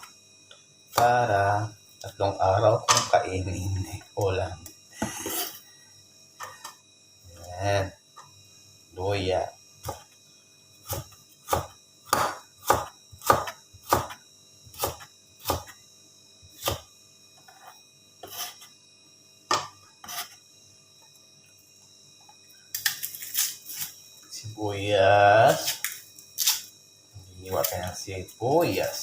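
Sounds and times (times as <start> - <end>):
knife chopping on cutting board: 10.9 - 15.7.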